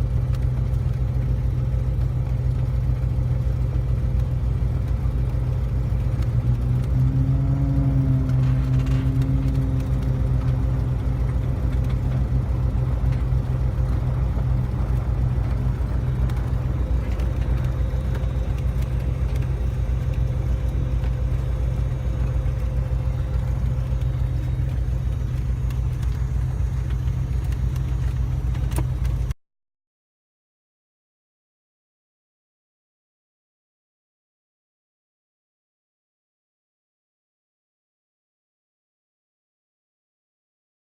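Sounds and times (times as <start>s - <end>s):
aircraft piston engine and propeller: 0.0s - 29.4s.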